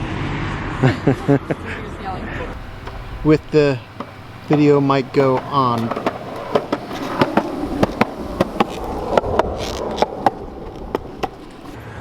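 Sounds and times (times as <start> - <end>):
skateboard wheels clacking over cracks: 2.6 - 11.8
skateboard wheels rumbling on concrete: 2.6 - 11.8.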